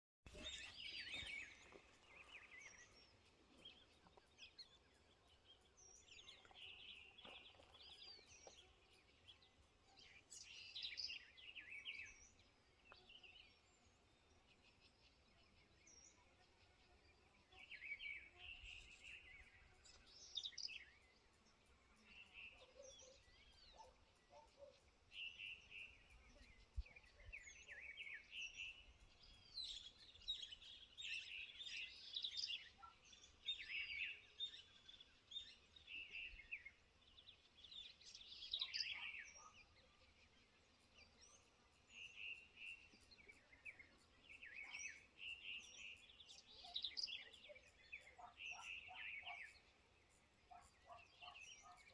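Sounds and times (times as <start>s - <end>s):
songbirds chirping and trilling: 0.3s - 51.9s.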